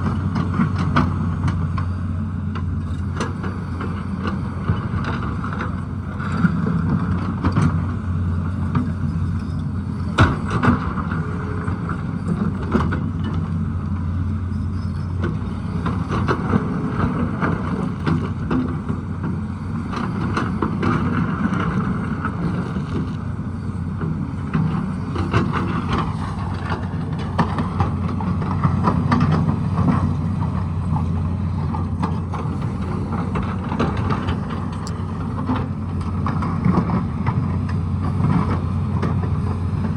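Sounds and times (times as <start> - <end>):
excavator diesel engine running: 0.0 - 39.9
digging knocks and clanks: 23.9 - 39.9.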